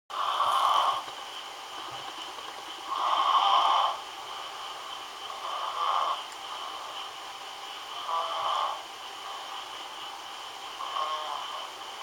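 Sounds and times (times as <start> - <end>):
person snoring: 0.1 - 1.1, 2.9 - 4.0, 5.3 - 7.1, 7.9 - 9.5, 10.8 - 11.8.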